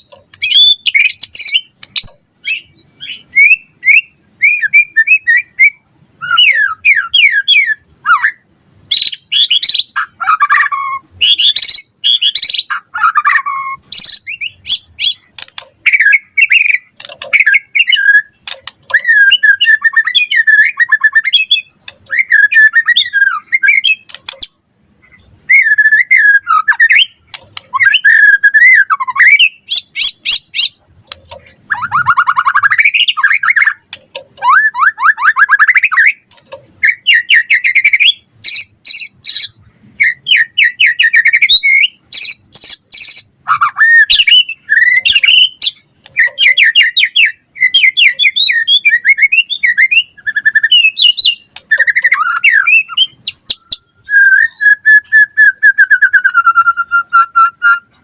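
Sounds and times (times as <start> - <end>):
songbird singing varied song: 0.0 - 58.0.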